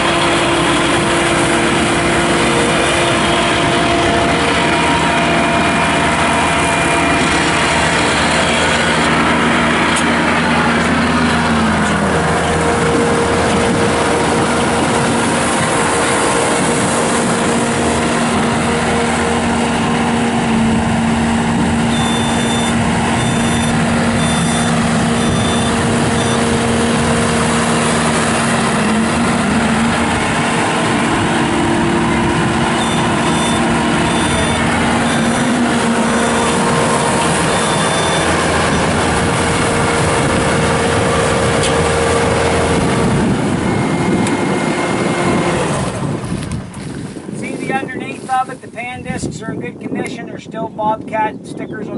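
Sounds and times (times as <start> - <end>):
brush cutter drone and whine: 0.0 - 48.1
diesel engine running hard: 0.0 - 51.9
high pulsing beep: 21.9 - 26.5, 32.8 - 36.6, 37.2 - 39.0.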